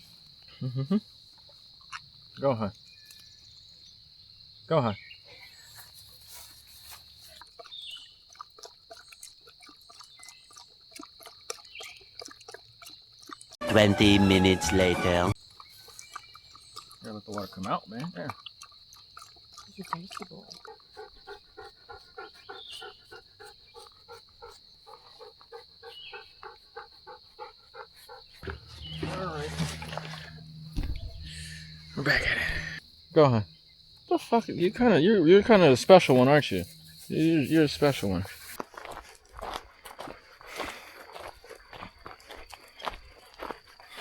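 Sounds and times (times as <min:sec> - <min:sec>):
insects droning: 0:00.0 - 0:44.0
dog lapping water: 0:06.8 - 0:13.6, 0:15.1 - 0:32.8.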